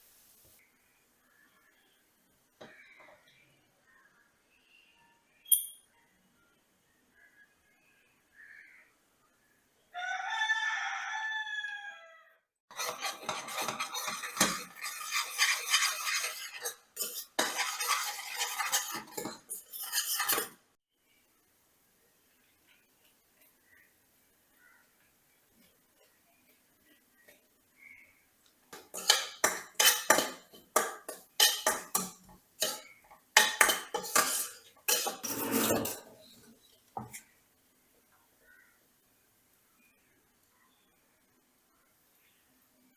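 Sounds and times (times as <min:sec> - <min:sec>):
rooster crowing: 0:09.9 - 0:12.4
kitchen utensils clattering: 0:12.7 - 0:20.6, 0:28.8 - 0:37.2.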